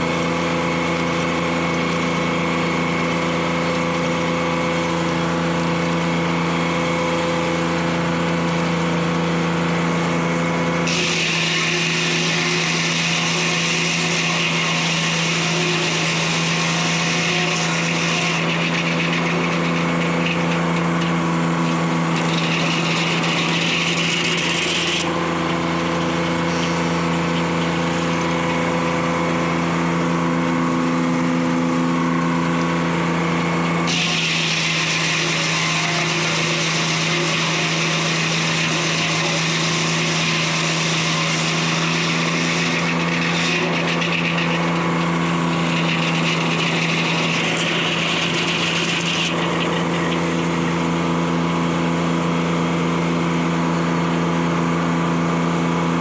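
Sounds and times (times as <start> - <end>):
diesel engine running: 19.4 - 34.0.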